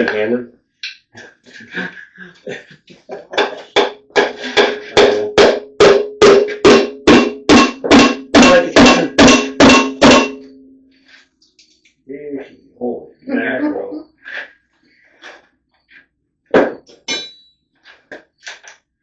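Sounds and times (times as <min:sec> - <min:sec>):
hammer striking metal: 0:03.4 - 0:10.7, 0:16.6 - 0:17.6.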